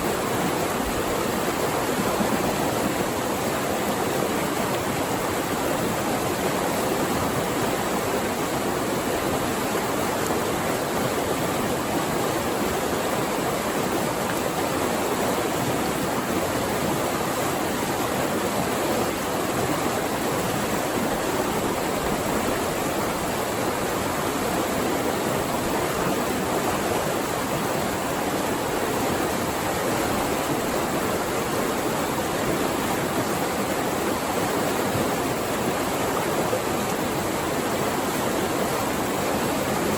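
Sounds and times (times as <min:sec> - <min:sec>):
water rushing: 0:00.0 - 0:39.9.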